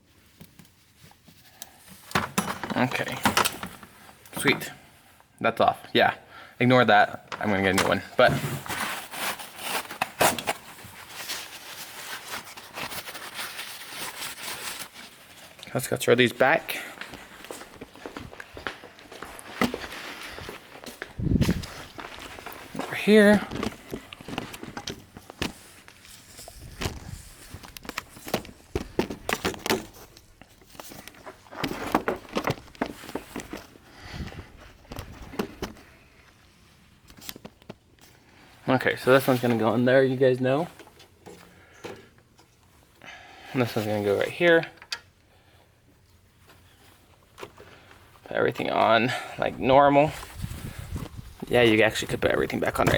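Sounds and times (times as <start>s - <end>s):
plastic hose parts clicking and rustling: 0.2s - 4.7s, 7.2s - 42.9s, 43.6s - 49.2s, 50.0s - 52.9s
footsteps: 16.2s - 35.8s.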